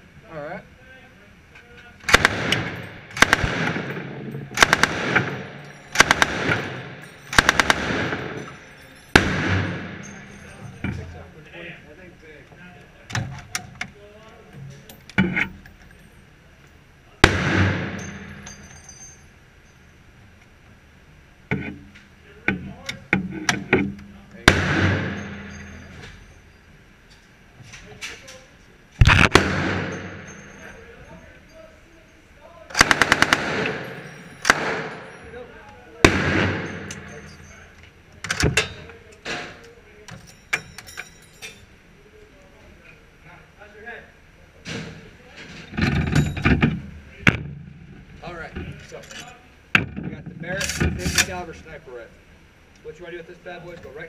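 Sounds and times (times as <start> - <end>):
machine gun shot: 2.0 - 8.4, 9.1 - 10.0, 17.2 - 18.3, 24.5 - 25.4, 29.0 - 30.4, 32.7 - 35.0, 36.0 - 36.9
gunshots with echo: 2.1 - 8.5, 9.1 - 10.2, 17.2 - 18.4, 24.4 - 25.6, 29.0 - 30.4, 32.7 - 35.1, 36.0 - 37.1.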